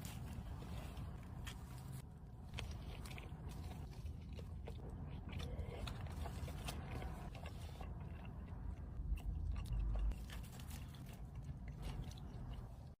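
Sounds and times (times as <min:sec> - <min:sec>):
crunchy chewing: 0:00.0 - 0:13.0.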